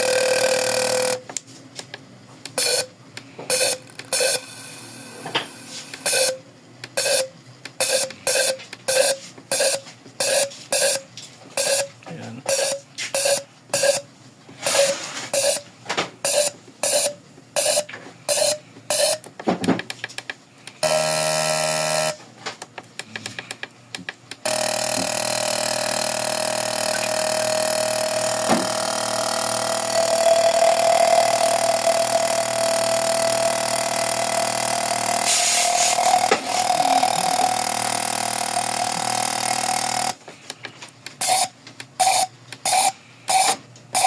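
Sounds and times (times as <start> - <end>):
injector pulsed clicks: 0.0 - 1.2, 2.5 - 2.9, 5.9 - 11.0, 20.7 - 22.2, 24.3 - 40.2
brief steady tone: 2.6 - 2.9, 3.5 - 4.6, 5.9 - 6.4, 7.0 - 11.0, 11.6 - 11.9, 12.5 - 14.0, 14.6 - 15.6, 24.6 - 37.8
buzzing spray with hiss: 35.2 - 36.4.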